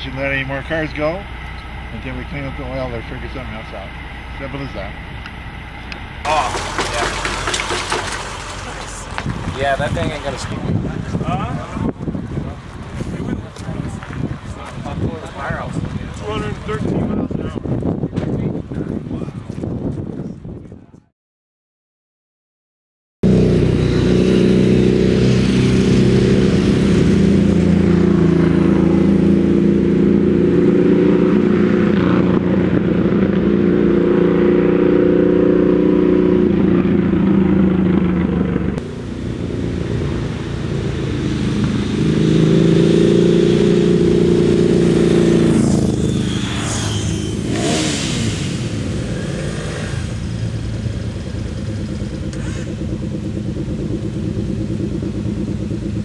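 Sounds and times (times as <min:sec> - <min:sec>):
car engine running hard: 0:00.0 - 0:17.6, 0:23.2 - 0:56.0
vehicle passing by: 0:06.3 - 0:11.0, 0:23.3 - 0:53.3.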